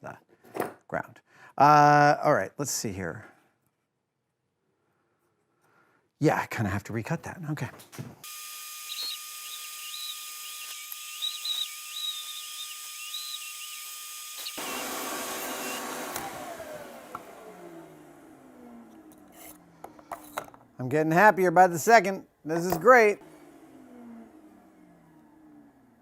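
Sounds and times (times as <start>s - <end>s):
power tool motor whining: 8.2s - 19.7s.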